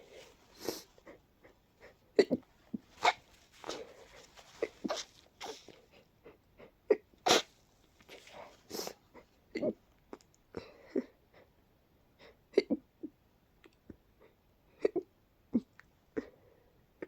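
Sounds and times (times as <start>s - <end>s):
person hiccuping: 2.2s - 2.4s
person sneezing: 3.0s - 5.8s, 7.2s - 9.0s.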